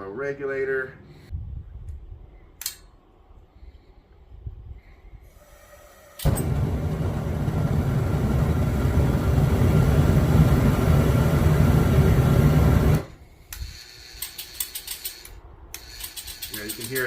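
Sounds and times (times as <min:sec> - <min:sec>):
gas forge burner roaring: 0:05.4 - 0:14.0.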